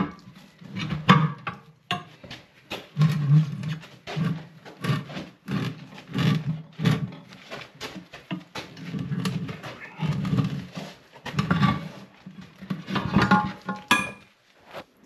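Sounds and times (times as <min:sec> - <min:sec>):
ringing metal clank: 0:13.9 - 0:14.2.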